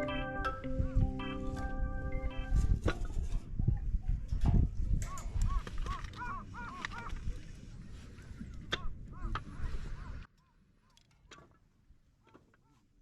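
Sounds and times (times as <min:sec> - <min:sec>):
birds calling: 0:05.1 - 0:07.2.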